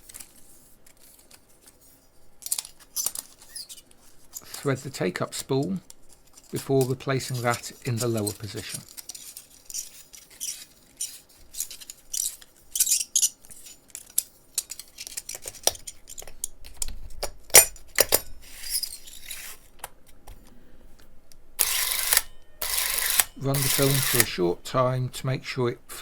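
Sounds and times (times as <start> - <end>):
clockwork film drive running: 21.6 - 24.4.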